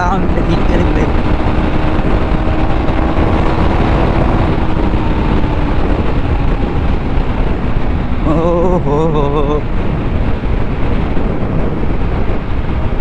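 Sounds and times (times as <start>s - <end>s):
motorcycle engine: 0.0s - 8.7s
wind rush on microphone: 0.0s - 13.0s.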